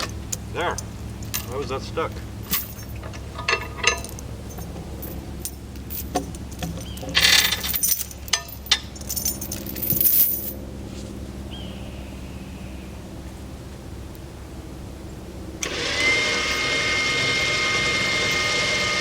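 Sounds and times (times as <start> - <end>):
metal chain clinking and rattling: 0.0 - 1.7, 2.3 - 10.6
steady low hum: 0.0 - 15.7.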